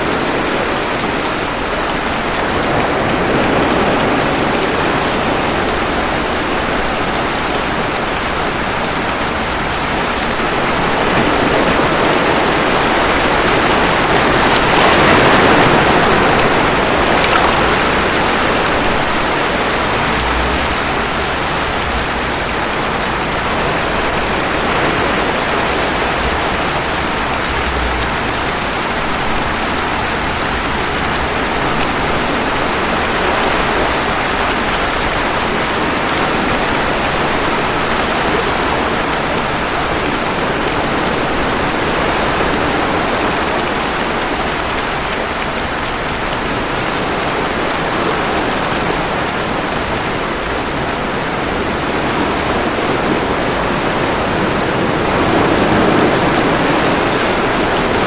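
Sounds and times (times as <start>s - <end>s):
steady rain: 0.0s - 58.0s.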